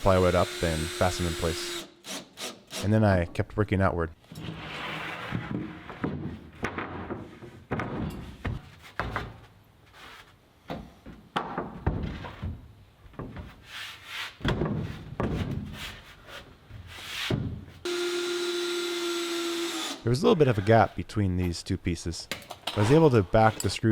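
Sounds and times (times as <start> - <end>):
cordless drill driving screws: 0.1 - 2.9, 17.9 - 20.0.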